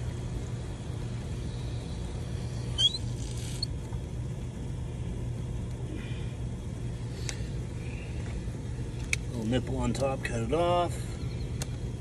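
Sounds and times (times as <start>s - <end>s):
high squeak: 2.8s - 3.7s.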